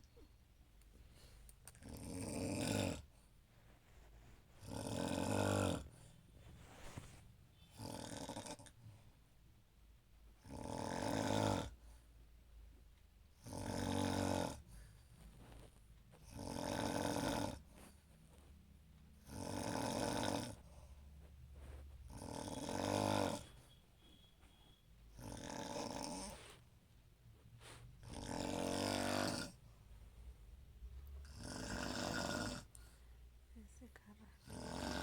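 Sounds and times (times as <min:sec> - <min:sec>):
woman snoring loudly: 0:01.8 - 0:03.0, 0:04.6 - 0:05.9, 0:07.8 - 0:08.6, 0:10.4 - 0:11.8, 0:13.4 - 0:14.6, 0:16.3 - 0:17.6, 0:19.3 - 0:20.6, 0:22.1 - 0:23.4, 0:25.2 - 0:26.3, 0:28.0 - 0:29.6, 0:31.3 - 0:32.7, 0:34.4 - 0:35.0.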